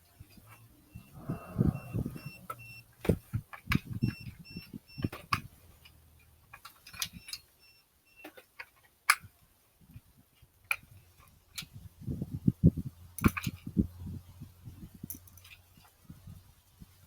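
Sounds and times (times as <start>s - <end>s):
short high beeps: 0.9s - 2.8s.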